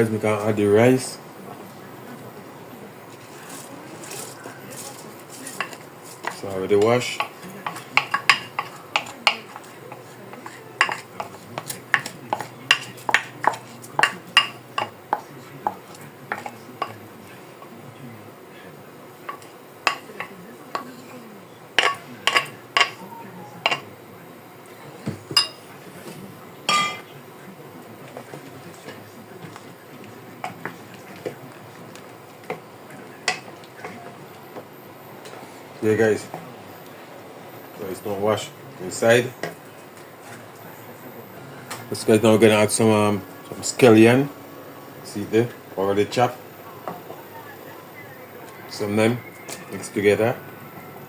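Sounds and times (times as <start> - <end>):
utensil clinking metal pot: 4.0 - 15.0, 21.7 - 23.0, 25.3 - 25.6, 26.7 - 27.1.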